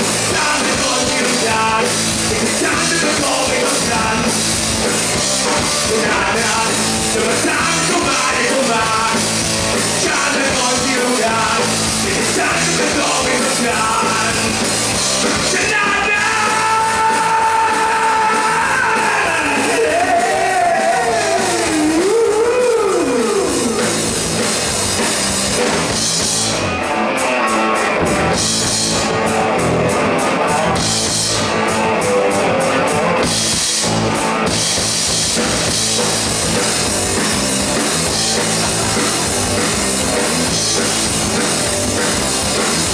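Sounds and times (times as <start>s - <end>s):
rock band playing: 0.0s - 42.9s
electric guitar lead bending pitch: 21.4s - 42.9s.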